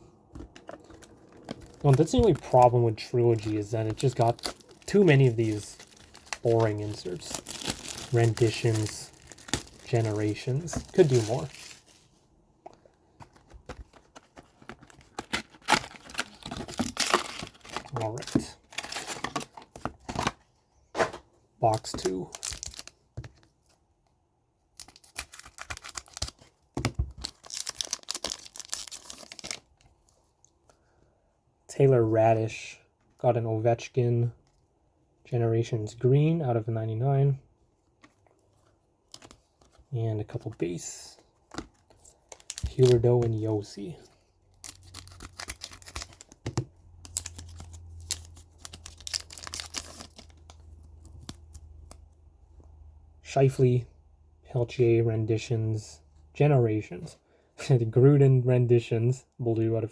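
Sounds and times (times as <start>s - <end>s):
packaging crinkling and tearing: 0.4s - 12.1s, 13.2s - 20.4s, 21.6s - 23.0s, 24.8s - 29.8s, 41.4s - 43.6s, 44.5s - 52.1s.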